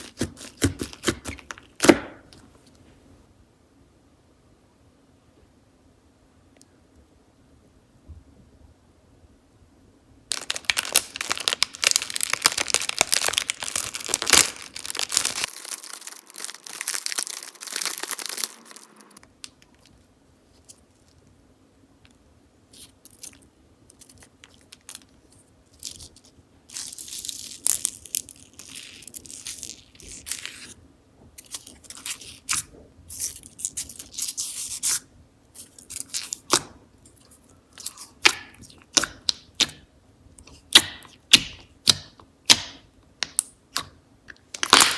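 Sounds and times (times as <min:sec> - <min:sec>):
slime crackling and popping: 0:00.0 - 0:02.2, 0:10.3 - 0:19.6, 0:26.7 - 0:30.7, 0:35.6 - 0:44.9.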